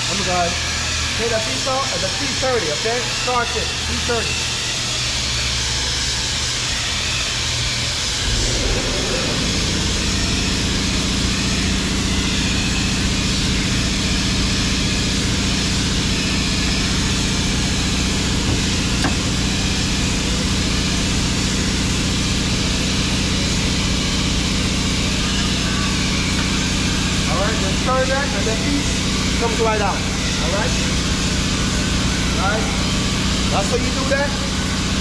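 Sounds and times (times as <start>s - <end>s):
machine humming: 8.1s - 12.9s.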